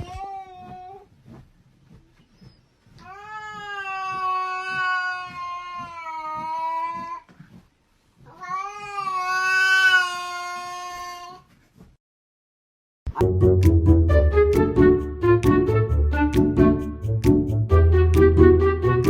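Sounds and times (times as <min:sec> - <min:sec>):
cat yowling: 0:03.1 - 0:07.2, 0:08.3 - 0:11.4.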